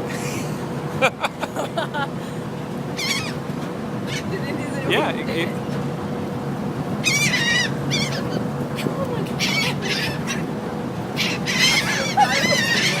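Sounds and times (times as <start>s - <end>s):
ferry engine hum: 0.0s - 13.0s
gulls squawking: 2.9s - 5.0s, 7.0s - 13.0s.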